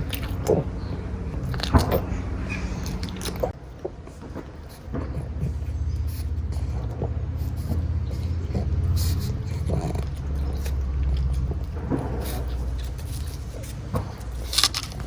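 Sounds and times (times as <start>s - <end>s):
dog snoring: 4.5s - 15.0s.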